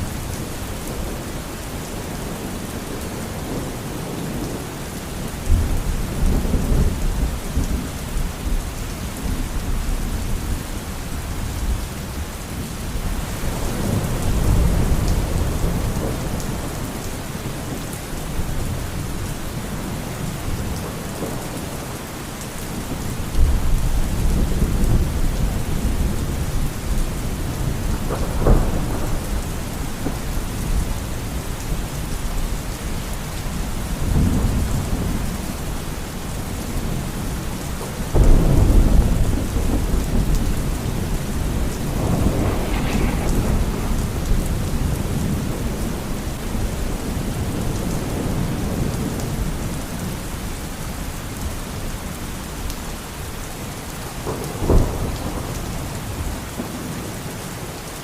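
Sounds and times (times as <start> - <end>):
steady rain: 0.0 - 58.0
rolling thunder: 12.9 - 22.0, 22.7 - 50.2, 54.2 - 57.0
sharp thunder clap: 38.2 - 46.8.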